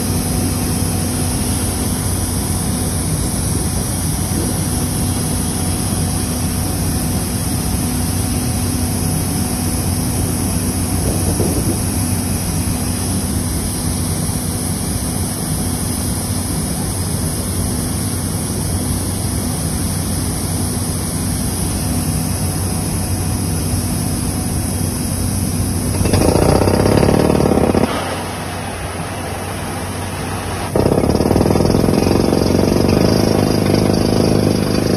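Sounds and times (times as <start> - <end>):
drilling rig engine running: 20.0 - 34.9.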